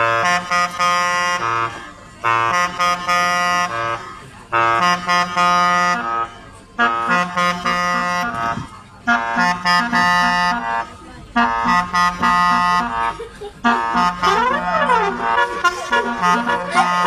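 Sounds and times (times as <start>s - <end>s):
reedy horn-like melody: 0.0s - 17.0s
low bass line: 6.9s - 17.0s.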